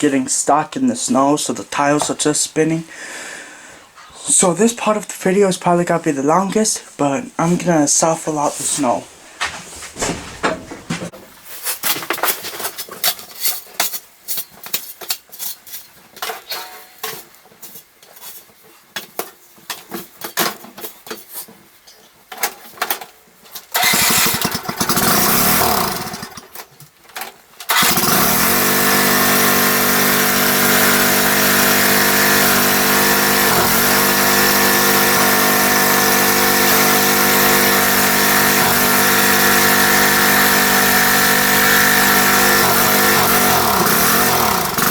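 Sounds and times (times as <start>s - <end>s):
short crunches and scrapes: 8.3s - 22.8s
riding lawn mower engine: 23.7s - 26.6s, 27.6s - 44.9s.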